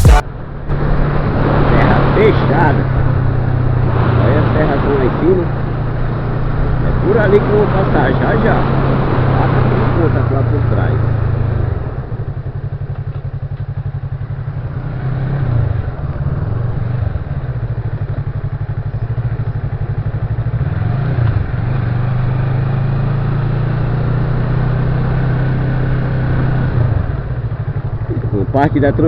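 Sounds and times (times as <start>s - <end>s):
vehicle engine running: 0.0s - 1.4s, 2.3s - 29.0s
road and wind noise: 0.0s - 29.0s.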